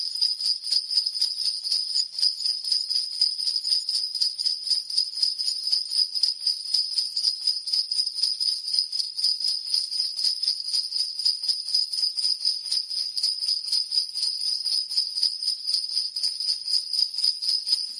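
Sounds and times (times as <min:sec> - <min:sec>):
sleigh bells jingling: 0:17.7 - 0:17.9.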